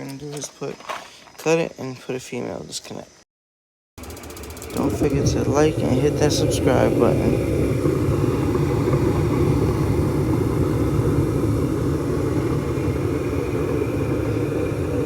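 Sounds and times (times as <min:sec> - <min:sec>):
furnace hum and air rush: 0:04.0 - 0:15.0.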